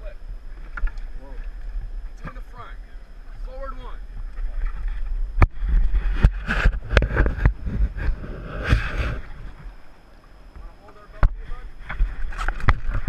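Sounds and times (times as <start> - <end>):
wind rumble on microphone: 0.0 - 13.0
paddles splashing water: 0.4 - 10.2.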